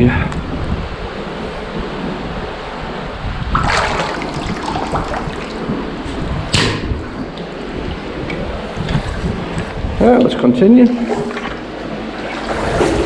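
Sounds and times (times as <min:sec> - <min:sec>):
water splashes: 0:03.5 - 0:13.0
fast-flowing water rushing: 0:03.6 - 0:09.6.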